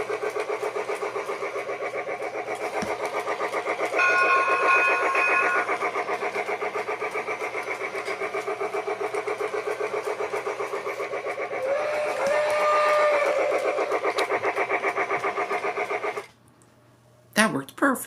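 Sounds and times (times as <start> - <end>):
toy train chugging: 0.0 - 16.4
toy train whistle: 4.0 - 5.8, 11.6 - 14.2.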